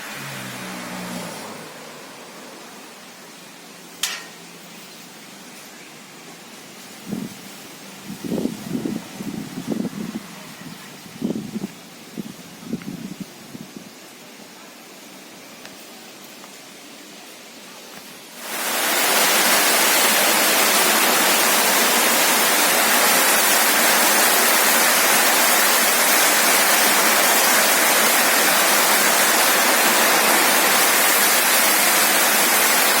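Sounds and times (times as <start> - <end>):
rushing water: 0.0 - 4.4, 17.9 - 33.0.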